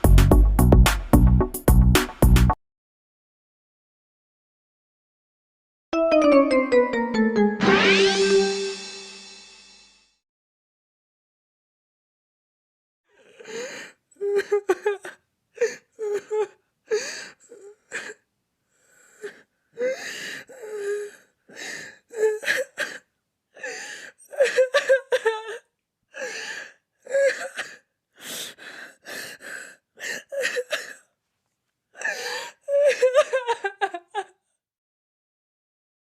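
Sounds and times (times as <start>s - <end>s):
high-pitched gasps and whimpers: 18.8s - 31.1s, 32.0s - 33.2s.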